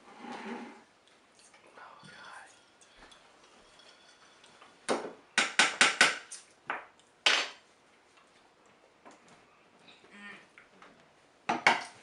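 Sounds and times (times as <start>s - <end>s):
cans and cutlery clinking: 1.3s - 6.5s.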